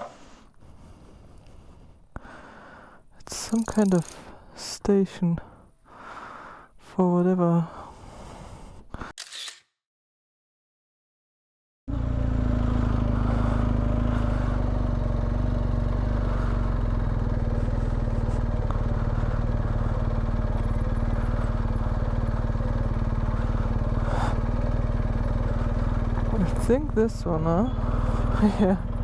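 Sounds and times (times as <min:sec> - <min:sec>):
motorcycle engine running: 0:03.3 - 0:04.4, 0:11.9 - 0:29.0.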